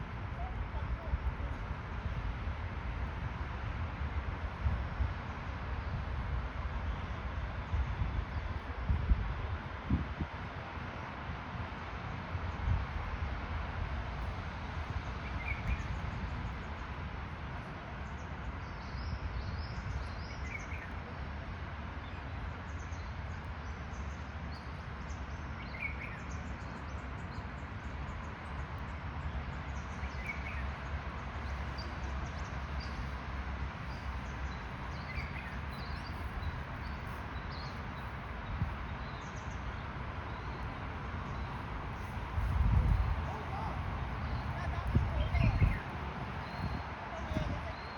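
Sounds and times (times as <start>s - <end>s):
bird chirping: 33.8s - 39.5s, 40.3s - 47.9s
steady low rumble: 40.5s - 47.9s.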